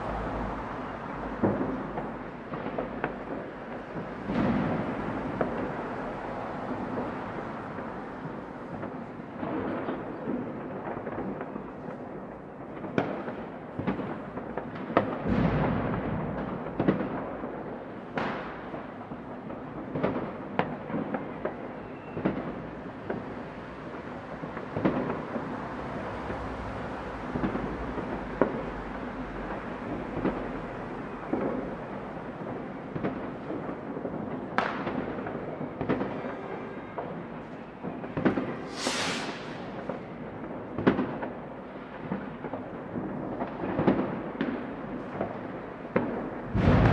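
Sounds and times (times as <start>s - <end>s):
firecracker cracks and bangs: 0.0s - 46.9s
rumble of distant fireworks: 0.0s - 46.9s.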